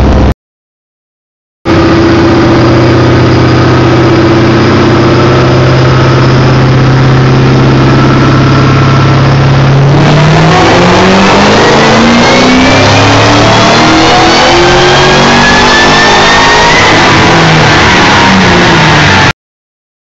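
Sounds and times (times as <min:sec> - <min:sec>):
car engine revving: 0:01.7 - 0:19.3.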